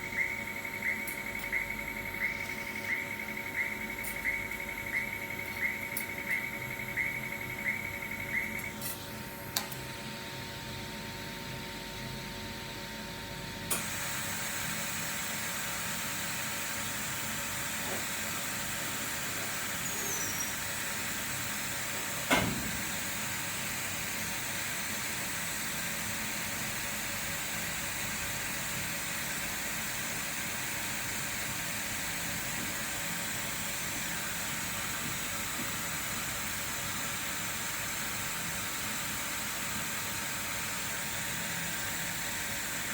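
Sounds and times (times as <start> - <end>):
welding machine humming: 13.7 - 42.9.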